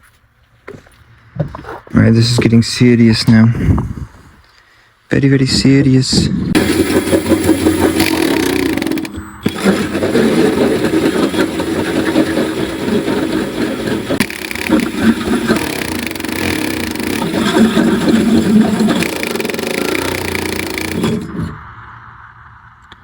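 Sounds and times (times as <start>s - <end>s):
power drill boring through metal: 6.6s - 21.6s.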